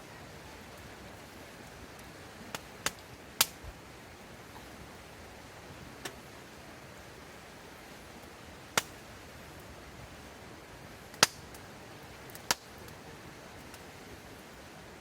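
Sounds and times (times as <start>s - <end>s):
faint steady hiss: 0.0s - 15.0s
wood fire crackling: 0.0s - 15.0s
burning wood pops: 1.6s - 3.8s, 6.0s - 6.2s, 8.7s - 9.1s, 11.1s - 13.0s.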